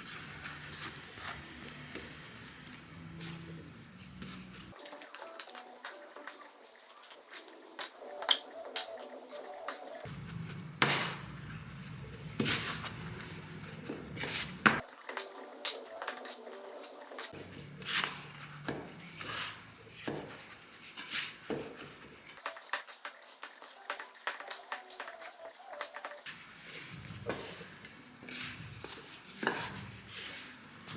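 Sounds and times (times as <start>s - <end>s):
utensils clinking against bowl: 4.8s - 10.1s, 14.8s - 17.4s, 22.4s - 26.3s.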